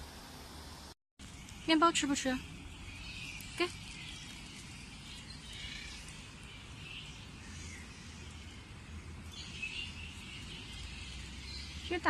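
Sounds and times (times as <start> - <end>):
fruit bats chattering: 1.3 - 8.6.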